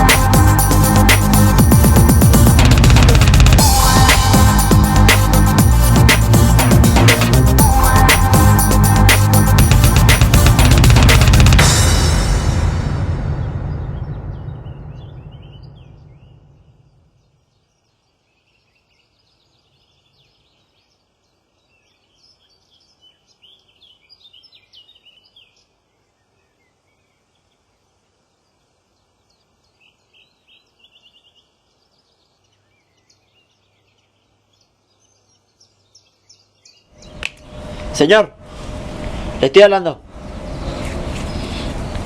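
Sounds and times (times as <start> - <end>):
background music: 0.0 - 14.4
small birds chirping: 13.8 - 37.3, 40.5 - 42.0.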